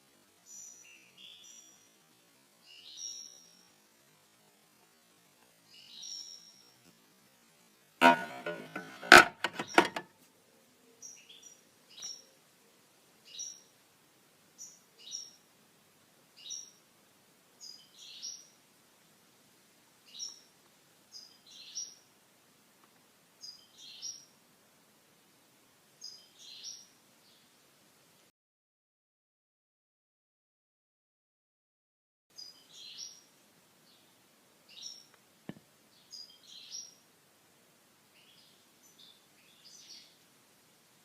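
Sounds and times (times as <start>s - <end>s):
small bird chirping: 0.4s - 2.0s, 2.6s - 3.8s, 5.7s - 6.9s, 11.0s - 12.3s, 17.6s - 18.6s, 20.1s - 20.5s, 21.1s - 22.1s, 32.3s - 33.3s, 36.0s - 37.0s, 38.1s - 40.2s
sharp clicks and knocks: 8.0s - 10.1s.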